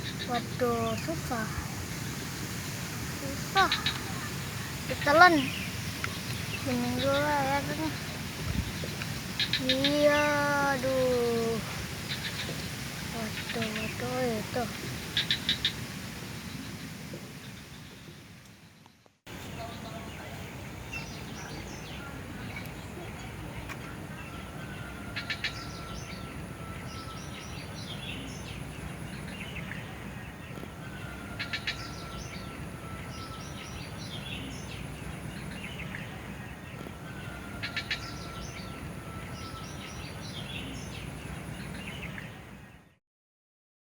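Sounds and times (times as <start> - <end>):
birds chirping and calling: 0.0 - 15.8, 24.1 - 42.4
low outdoor background rumble: 0.0 - 42.9.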